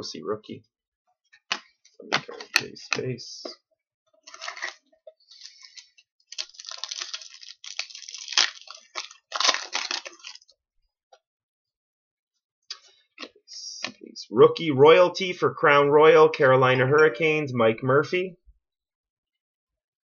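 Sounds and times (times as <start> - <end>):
foil wrapper rustling and crinkling: 4.2 - 10.5.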